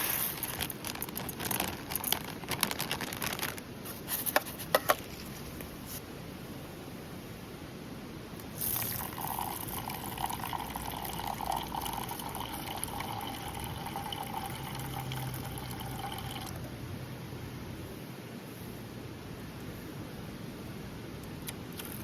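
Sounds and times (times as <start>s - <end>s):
water pouring into container: 8.5s - 16.7s.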